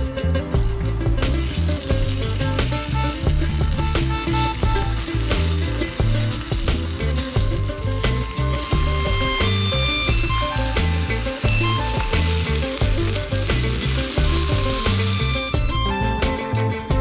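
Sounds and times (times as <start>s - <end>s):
background music with bass line: 0.0s - 17.0s
food sizzling in a pan: 1.2s - 16.0s.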